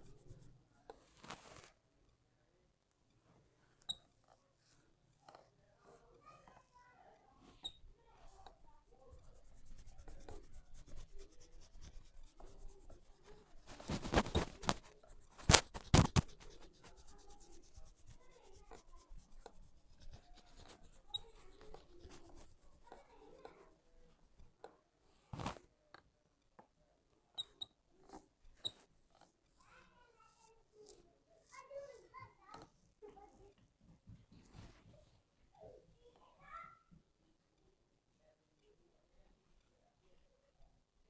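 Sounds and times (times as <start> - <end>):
fingers scratching through hair: 0.0 - 1.7, 7.5 - 24.5, 30.3 - 32.2.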